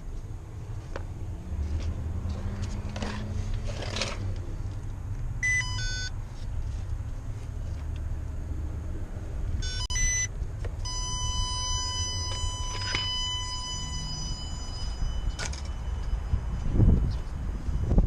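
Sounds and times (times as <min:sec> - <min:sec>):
electronic beeps: 0:05.4 - 0:06.1, 0:09.6 - 0:16.5
steady high-pitched tone: 0:09.6 - 0:18.0.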